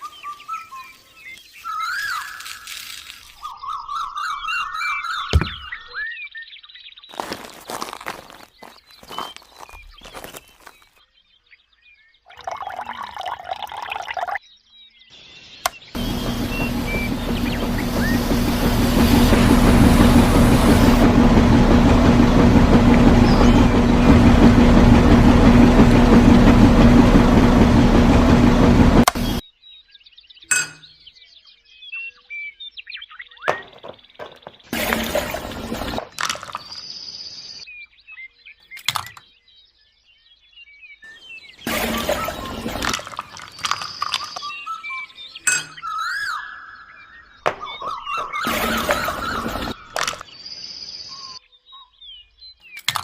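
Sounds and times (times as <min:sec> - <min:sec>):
small hard pieces clinking: 0:02.1 - 0:03.4
noisy rush: 0:16.0 - 0:29.4
small motor running: 0:16.0 - 0:29.4, 0:33.6 - 0:36.6, 0:41.7 - 0:44.3, 0:48.3 - 0:50.2.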